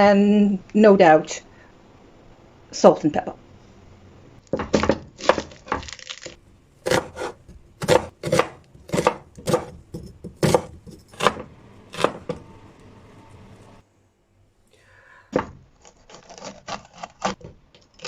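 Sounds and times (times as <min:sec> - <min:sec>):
knife chopping on cutting board: 0:06.8 - 0:12.5.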